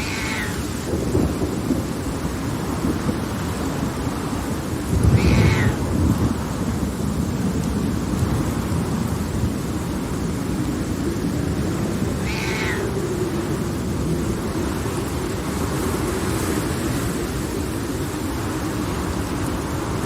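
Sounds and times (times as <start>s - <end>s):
short animal cries: 0.0s - 0.7s, 5.0s - 5.8s, 12.1s - 12.9s
low rumble of thunder: 0.0s - 20.0s
steady rain: 0.0s - 20.0s.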